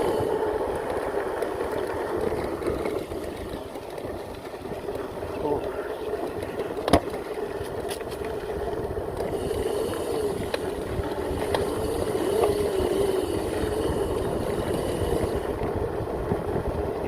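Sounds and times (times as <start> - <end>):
low wind rumble on microphone: 0.0 - 17.0
short knocks from riding: 6.6 - 7.3
electric motor whine: 8.4 - 15.8.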